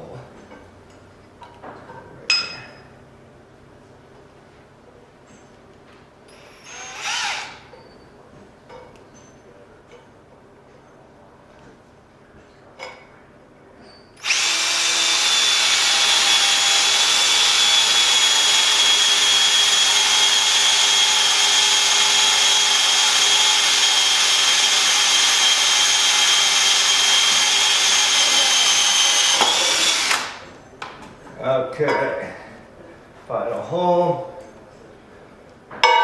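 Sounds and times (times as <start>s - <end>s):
power drill drilling metal pipe: 6.4s - 7.7s, 14.2s - 30.4s.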